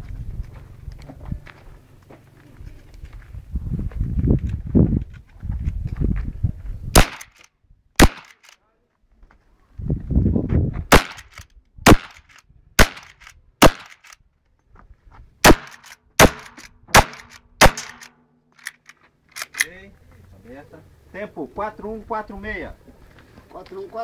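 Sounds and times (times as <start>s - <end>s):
shotgun shots: 7.0s - 8.6s, 10.9s - 14.2s, 15.4s - 19.6s.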